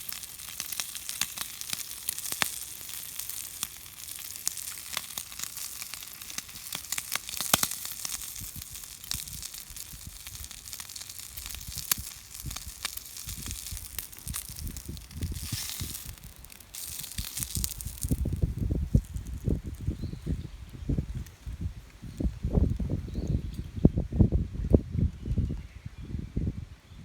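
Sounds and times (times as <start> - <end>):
food sizzling on griddle: 0.0 - 20.0
crackles and pops: 0.0 - 23.7
dull low bumps: 11.4 - 25.6.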